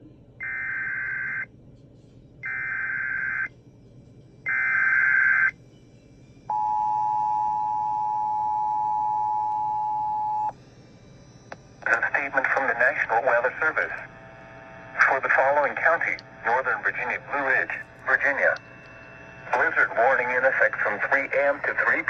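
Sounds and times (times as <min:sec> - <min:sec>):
two-tone attention signal: 0:06.5 - 0:10.5.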